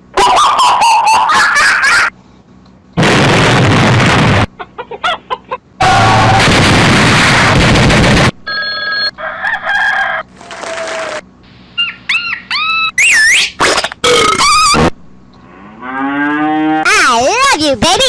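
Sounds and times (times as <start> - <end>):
loud burst of noise: 3.0 - 4.5, 5.8 - 8.4.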